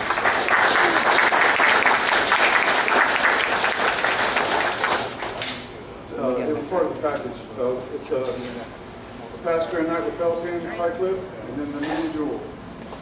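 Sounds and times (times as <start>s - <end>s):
audience applauding: 0.0s - 5.5s.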